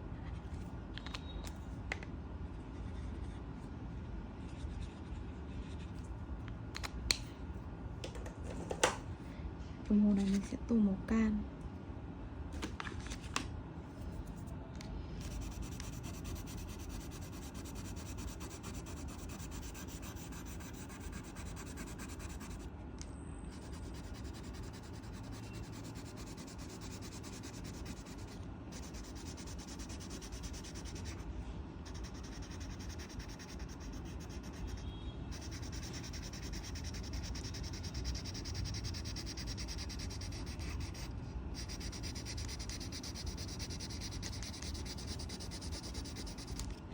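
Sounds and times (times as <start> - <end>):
colouring tool scribbling on paper: 15.2 - 22.7, 23.5 - 31.2, 31.8 - 46.7.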